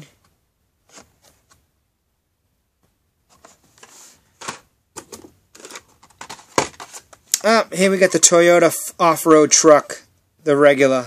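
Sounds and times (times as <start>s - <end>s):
plastic and cardboard packs crinkling: 3.4s - 7.4s.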